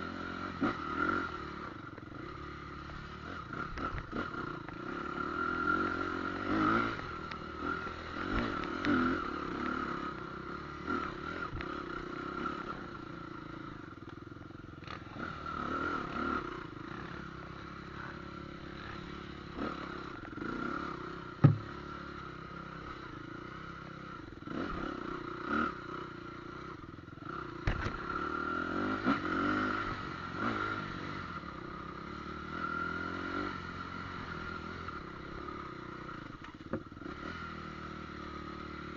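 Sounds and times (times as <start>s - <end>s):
rattles and knocks: 21.4s - 21.7s
engine running: 21.4s - 22.0s.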